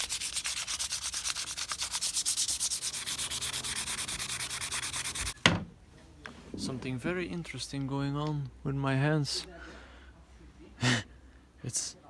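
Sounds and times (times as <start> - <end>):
sandpaper rubbing on wood: 0.0 - 5.4.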